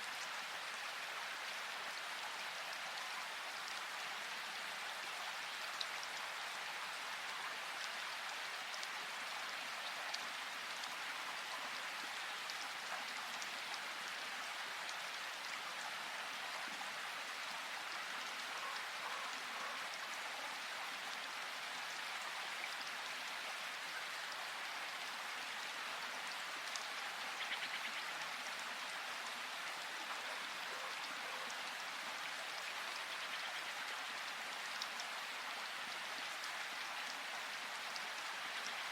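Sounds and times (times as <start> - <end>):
raindrops ticking on surfaces: 0.0 - 38.9
steady rain hiss: 0.0 - 38.9.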